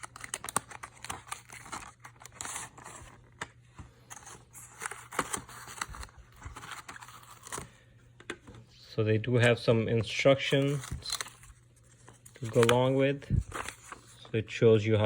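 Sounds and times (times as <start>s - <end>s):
packaging rustling and crinkling: 0.0s - 7.8s, 10.3s - 14.3s.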